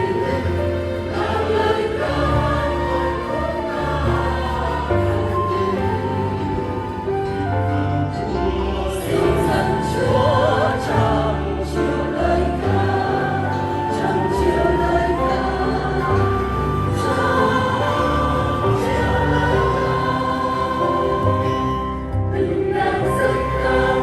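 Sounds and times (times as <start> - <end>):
choir singing: 0.0 - 24.0
low accompaniment: 0.0 - 24.0.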